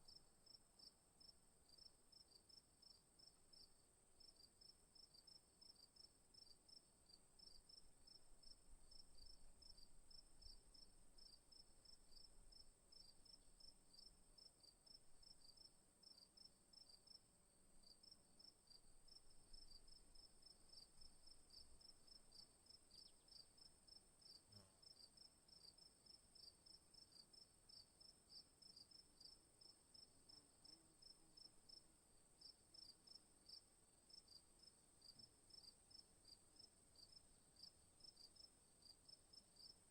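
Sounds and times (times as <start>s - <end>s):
crickets chirping: 17.8s - 39.8s.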